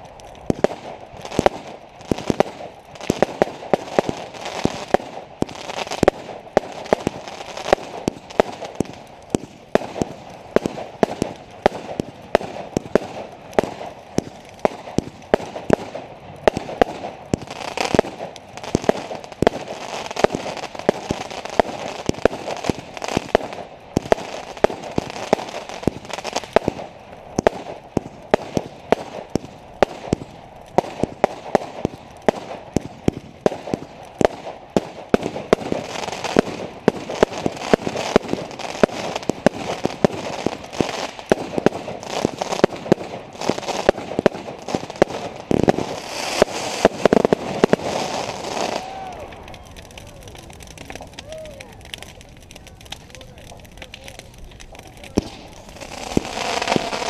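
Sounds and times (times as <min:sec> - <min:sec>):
fireworks bangs: 0:00.0 - 0:57.0
fireworks crackling: 0:00.0 - 0:57.0.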